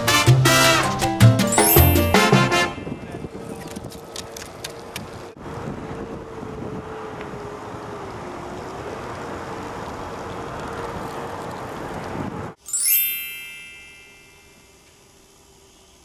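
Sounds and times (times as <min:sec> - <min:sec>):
blizzard wind whistling: 0:04.8 - 0:12.6.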